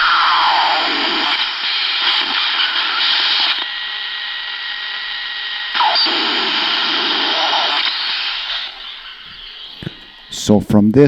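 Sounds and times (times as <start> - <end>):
radio hiss with electrical interference: 0.0 - 11.0.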